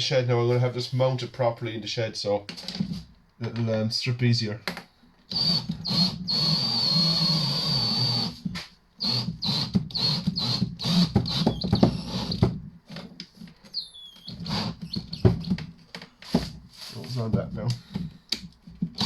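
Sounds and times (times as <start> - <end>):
battery drill whining: 5.3 - 8.4, 9.0 - 12.5, 13.7 - 15.4.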